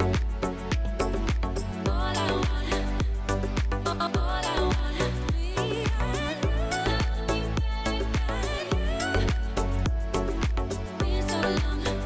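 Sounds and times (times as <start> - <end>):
music with quick beat and bass: 0.0 - 12.0.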